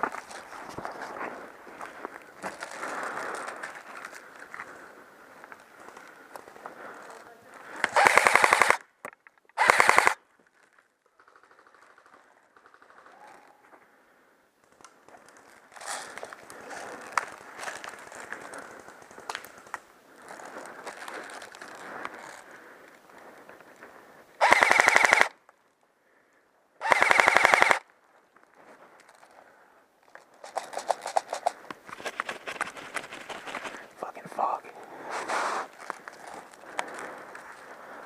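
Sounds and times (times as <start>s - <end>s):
airsoft gun bursts of fire: 7.9s - 8.8s, 9.6s - 10.2s, 24.4s - 25.3s, 26.8s - 27.8s
scattered single shots: 7.9s - 8.8s, 9.6s - 10.2s, 24.4s - 25.3s, 26.8s - 27.8s.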